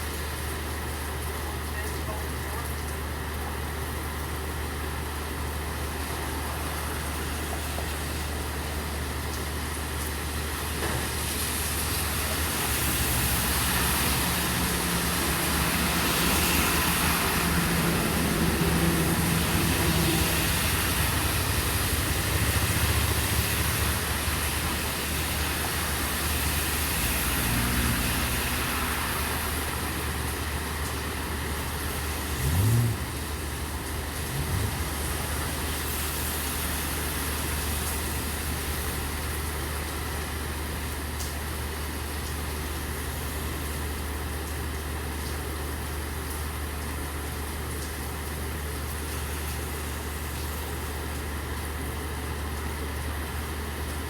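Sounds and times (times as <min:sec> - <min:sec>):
rain on street: 0:00.0 - 0:54.0
vehicle engine running: 0:13.0 - 0:40.4.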